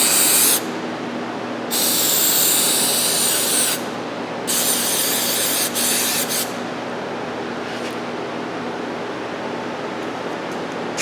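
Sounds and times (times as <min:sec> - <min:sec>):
aerosol can spraying: 0:04.5 - 0:06.5.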